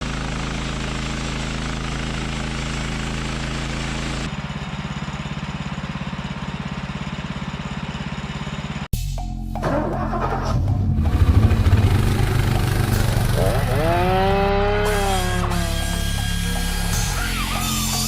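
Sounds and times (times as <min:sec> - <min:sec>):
engine running: 0:00.0 - 0:08.9, 0:09.5 - 0:18.0
engine rapid pulsing: 0:09.6 - 0:18.0.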